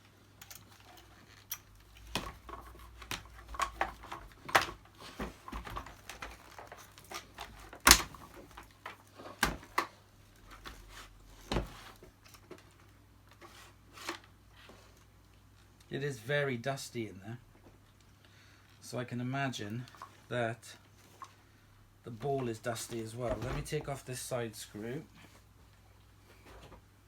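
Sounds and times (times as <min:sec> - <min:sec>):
plastic parts clicking and knocking: 0:00.4 - 0:10.8.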